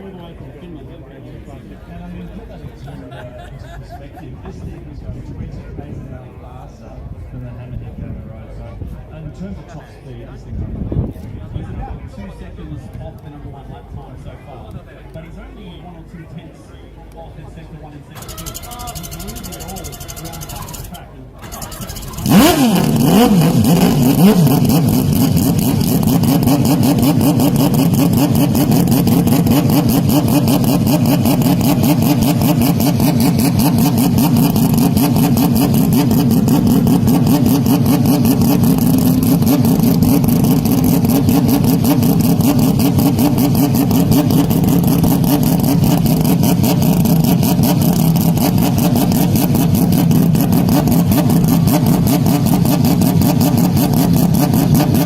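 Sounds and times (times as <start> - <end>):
motocross bike engine revving: 18.2 - 55.0.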